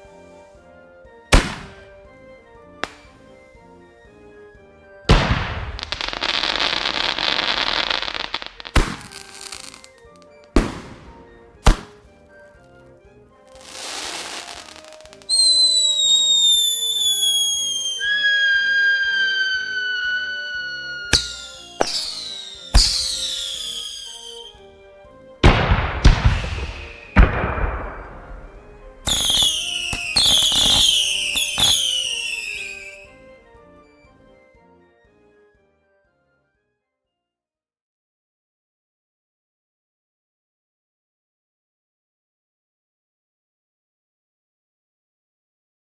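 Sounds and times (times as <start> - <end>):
firework boom: 1.4 - 1.9, 5.1 - 9.2, 25.4 - 30.9
firework shrill whistle: 1.4 - 2.0, 2.8 - 3.1, 5.1 - 12.0, 13.6 - 24.6, 26.0 - 33.2
firework bangs: 1.4 - 2.1, 2.8 - 3.3, 5.1 - 12.2, 13.6 - 24.6, 25.4 - 33.1
fireworks crackling: 1.4 - 2.1, 2.8 - 3.2, 5.1 - 12.2, 13.5 - 24.6, 25.5 - 33.1
rushing swell: 18.0 - 22.5.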